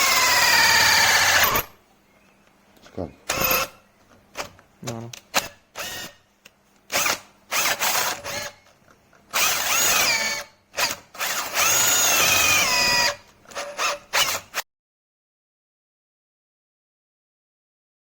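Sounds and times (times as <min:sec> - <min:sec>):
drill-driver motor whine: 0:00.0 - 0:01.7, 0:03.3 - 0:03.8, 0:05.8 - 0:06.2, 0:06.9 - 0:08.7, 0:09.3 - 0:14.6.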